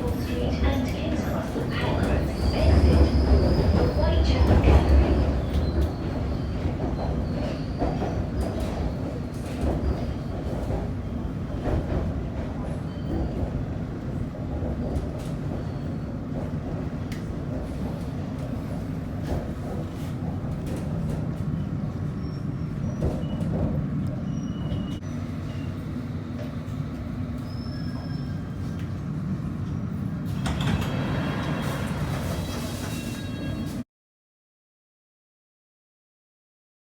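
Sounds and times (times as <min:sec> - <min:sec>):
train rumbling: 0:00.0 - 0:33.8
wheel squeals: 0:24.2 - 0:25.7, 0:27.4 - 0:28.8.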